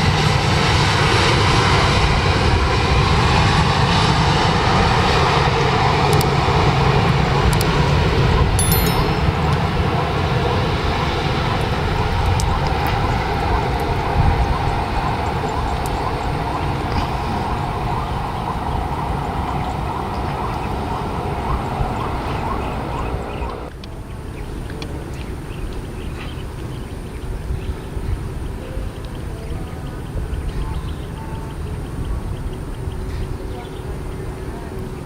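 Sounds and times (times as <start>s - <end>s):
jet engines running: 0.0s - 24.3s.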